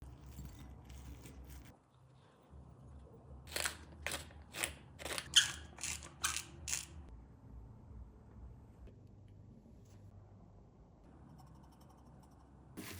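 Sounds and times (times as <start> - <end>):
spice grinder crunching: 3.5 - 7.0.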